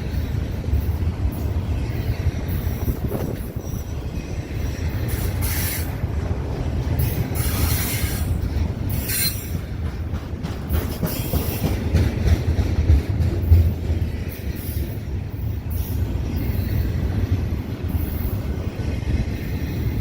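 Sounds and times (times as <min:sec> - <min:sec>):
train cars rumbling past: 0:00.0 - 0:20.0
wheels squealing: 0:07.0 - 0:09.8.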